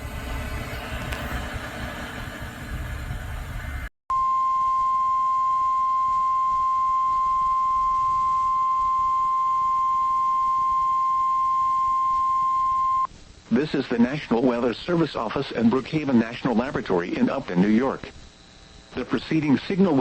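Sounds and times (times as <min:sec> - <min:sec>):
steady warning alarm tone: 0:05.1 - 0:13.1
radio hiss: 0:12.8 - 0:20.0.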